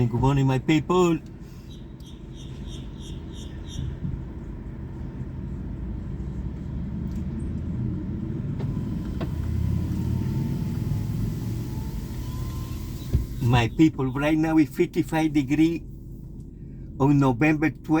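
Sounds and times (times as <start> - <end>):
motor vehicle passing: 1.4 - 14.1.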